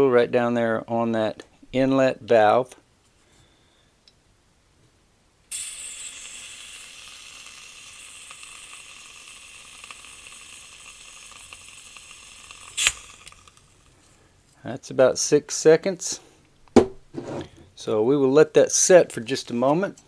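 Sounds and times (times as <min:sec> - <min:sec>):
butane gas hissing: 0:05.5 - 0:14.6.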